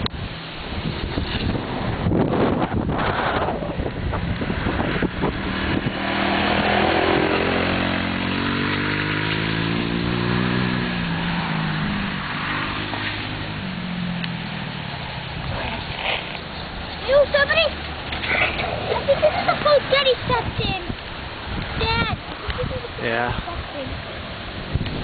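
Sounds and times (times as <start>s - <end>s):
wind noise on microphone: 0.0s - 12.5s, 13.4s - 25.0s
quad bike engine running: 0.0s - 20.6s.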